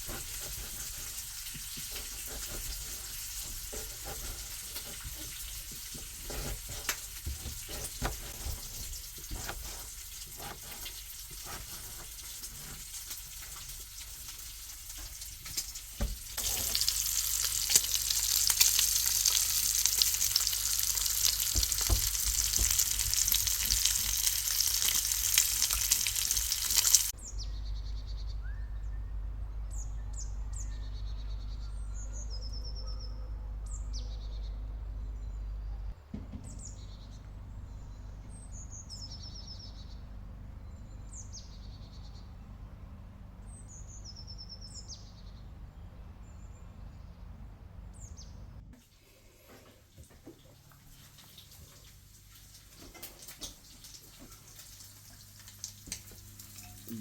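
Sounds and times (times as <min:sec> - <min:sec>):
bacon sizzling in a pan: 0:00.0 - 0:07.4, 0:08.0 - 0:27.1, 0:50.9 - 0:57.0
faint bird chirps: 0:27.2 - 0:42.4.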